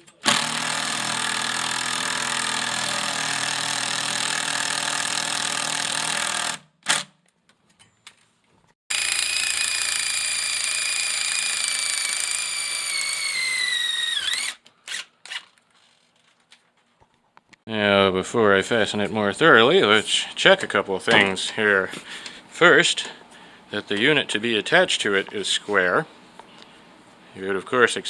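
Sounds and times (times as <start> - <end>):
power drill driving screws: 0.2 - 7.1, 8.9 - 15.6.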